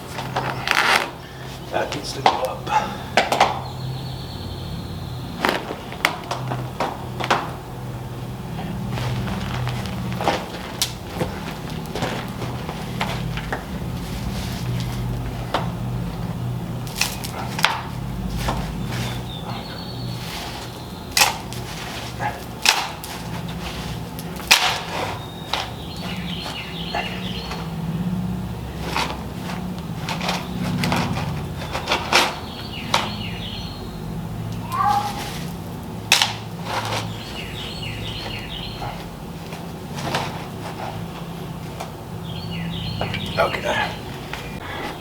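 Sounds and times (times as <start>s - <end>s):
steady low hum: 0.0s - 31.8s, 32.5s - 45.0s
bird singing descending notes: 3.6s - 5.4s, 42.3s - 45.0s
scuffing knocks: 8.5s - 16.3s.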